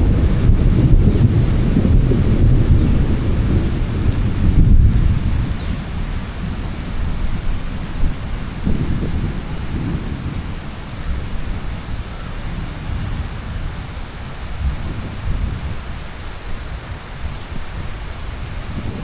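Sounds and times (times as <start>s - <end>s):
low rumble: 0.0s - 11.8s
heavy rain hissing: 0.0s - 19.0s.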